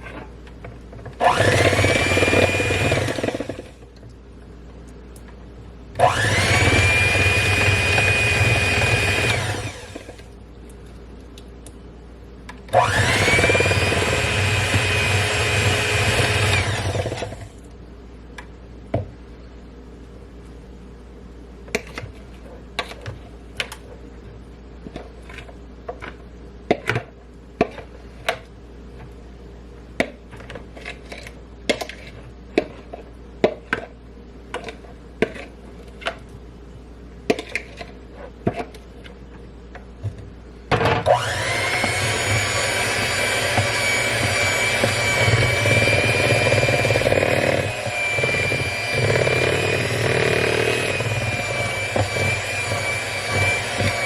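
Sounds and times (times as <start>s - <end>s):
electric stand mixer running: 1.2s - 3.8s, 6.0s - 10.2s, 12.8s - 17.5s, 41.1s - 54.0s.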